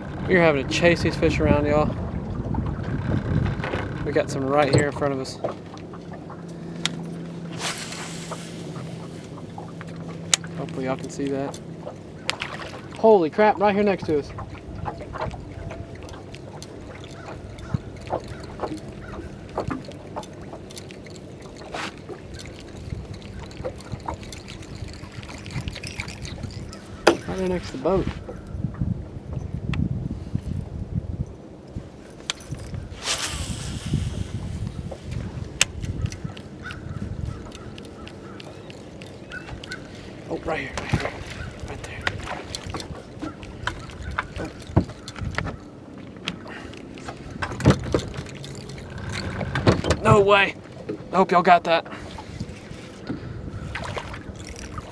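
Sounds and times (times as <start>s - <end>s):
water lapping against a boat hull: 0.0s - 54.9s
steady low hum: 4.1s - 13.0s.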